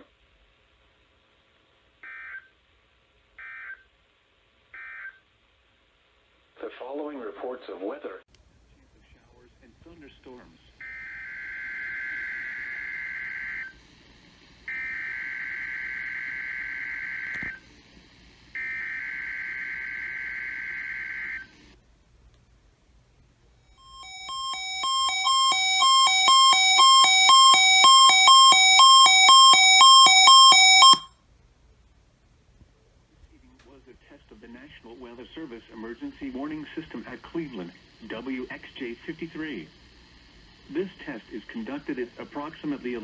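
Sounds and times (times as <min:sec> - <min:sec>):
screeching data bursts: 0:18.5 - 0:21.5, 0:23.8 - 0:31.0
buzzy two-pitch electronic alert: 0:23.8 - 0:31.1.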